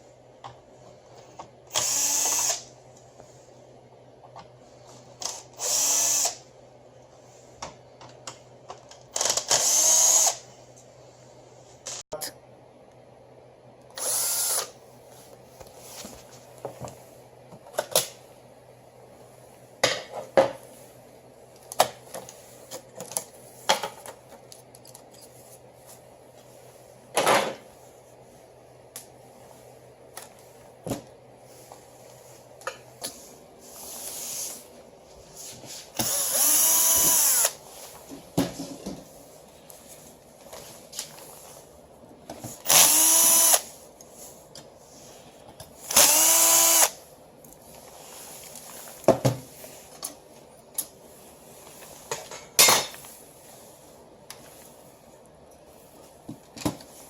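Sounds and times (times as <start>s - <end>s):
electric screwdriver motor running: 1.7s - 2.6s, 5.3s - 6.4s, 9.2s - 10.4s, 14.0s - 14.7s, 36.0s - 37.6s, 42.7s - 43.6s, 45.9s - 47.0s.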